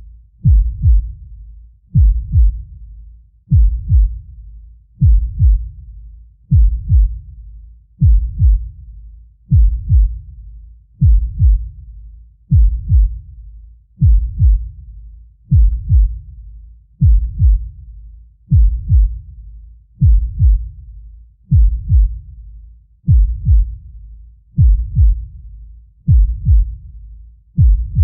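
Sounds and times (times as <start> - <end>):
deep heartbeat thumps: 0.4 - 1.3, 1.9 - 2.8, 3.5 - 4.3, 5.0 - 5.8, 6.5 - 7.3, 8.0 - 8.8, 9.5 - 10.3, 11.0 - 11.8, 12.5 - 13.3, 14.0 - 14.8, 15.5 - 16.3, 17.0 - 17.8, 18.5 - 19.3, 20.0 - 20.8, 21.5 - 22.4, 23.0 - 23.9, 24.6 - 26.9, 27.5 - 28.0.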